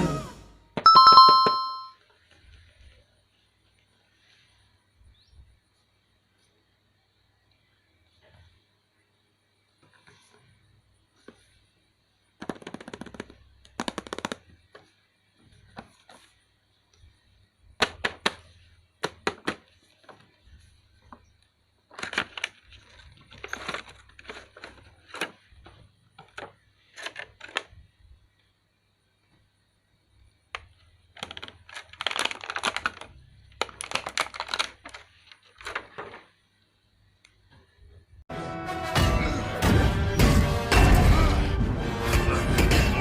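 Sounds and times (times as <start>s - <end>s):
plastic toys clicking and tapping: 12.4s - 14.9s, 17.8s - 20.3s, 30.5s - 36.2s
packaging rustling: 21.9s - 27.7s, 31.2s - 36.3s.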